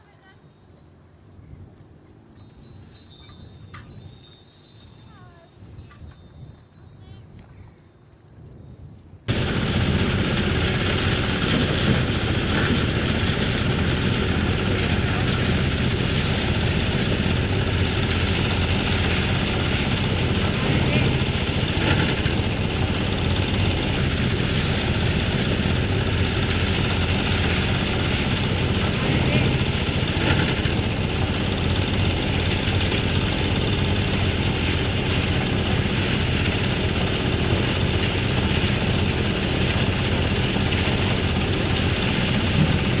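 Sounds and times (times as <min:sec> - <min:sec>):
farm machine engine running: 0:09.3 - 0:43.0.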